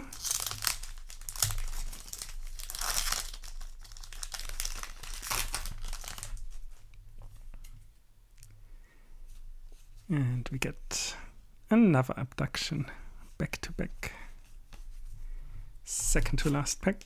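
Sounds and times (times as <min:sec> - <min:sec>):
foil pack tearing and crinkling: 0:00.0 - 0:06.6.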